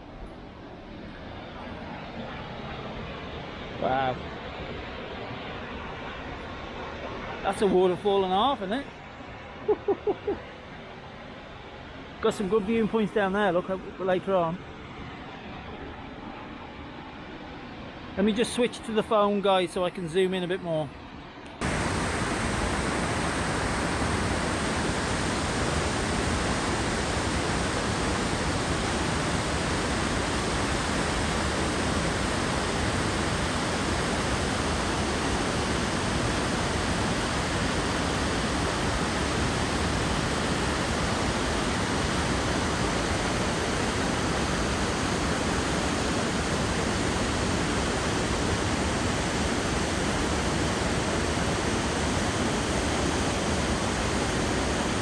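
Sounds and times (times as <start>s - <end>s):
waterfall rushing: 21.6s - 55.0s.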